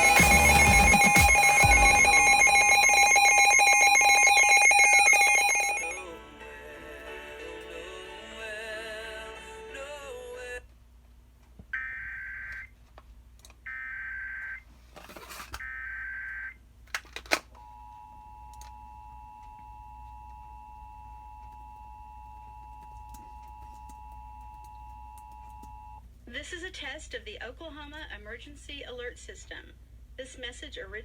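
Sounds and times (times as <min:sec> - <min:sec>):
digital data bursts: 0:00.0 - 0:06.0
two-tone attention signal: 0:00.0 - 0:06.0.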